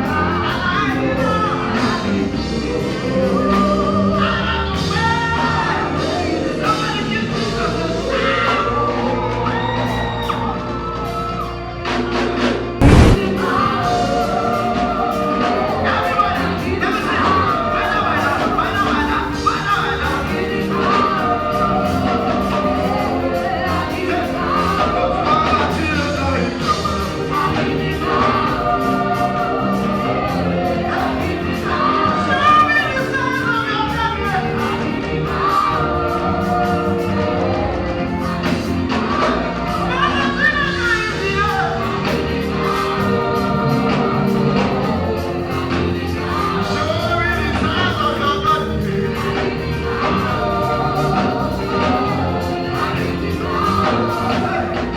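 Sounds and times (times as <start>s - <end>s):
band accompaniment: 0.0s - 54.9s
choir singing: 0.0s - 54.9s.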